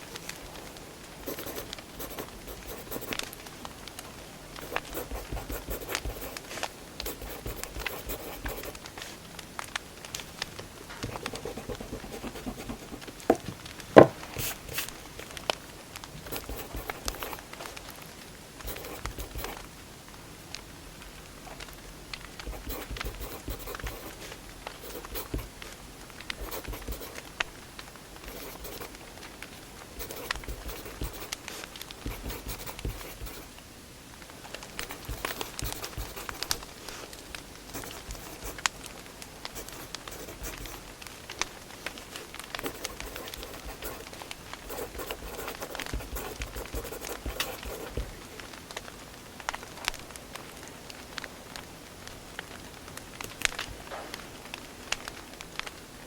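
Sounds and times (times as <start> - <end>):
soft steady rush: 4.4 - 9.2, 10.0 - 17.9, 18.5 - 19.8, 21.6 - 33.7, 34.4 - 48.3.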